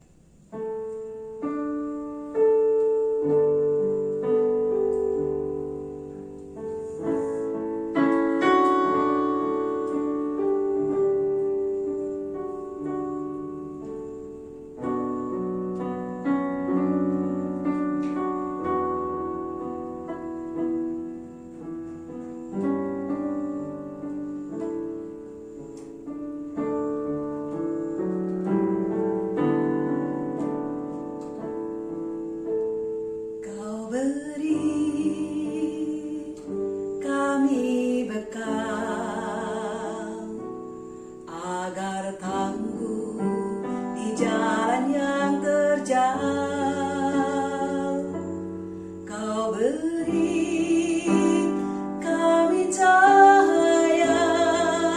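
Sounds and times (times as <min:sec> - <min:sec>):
solo piano: 0:00.0 - 0:54.9
woman singing with vibrato: 0:33.4 - 0:40.4, 0:41.3 - 0:48.4, 0:49.0 - 0:54.9.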